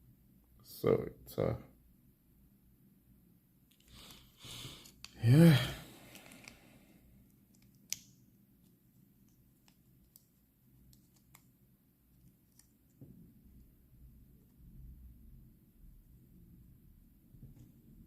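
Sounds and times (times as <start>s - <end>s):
small parts clicking and tapping: 7.3s - 8.2s, 9.2s - 11.5s.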